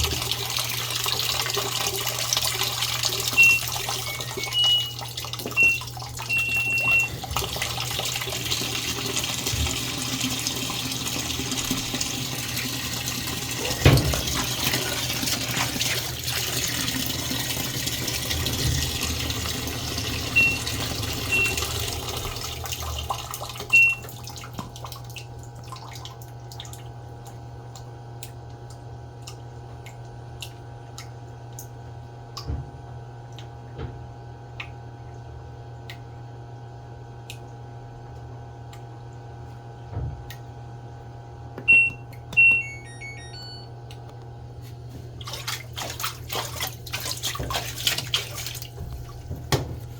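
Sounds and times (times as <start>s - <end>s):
water rushing into washing machine: 0.0s - 27.9s, 44.8s - 49.9s
short high beeps: 3.4s - 5.0s, 5.6s - 7.1s, 41.7s - 43.7s.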